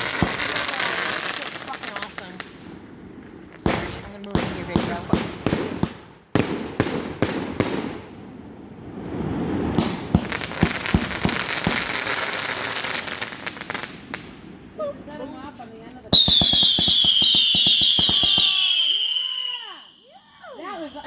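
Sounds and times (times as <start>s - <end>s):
fireworks crackling: 0.0s - 21.0s.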